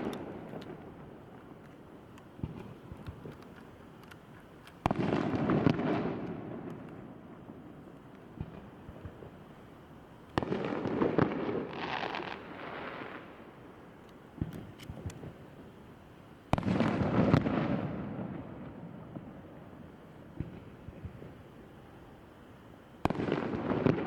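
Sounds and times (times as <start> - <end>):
rapid small firework pops: 0.0 - 7.2, 8.0 - 9.4, 10.3 - 13.3, 14.4 - 15.4, 16.5 - 19.4, 20.4 - 21.4, 23.0 - 24.0.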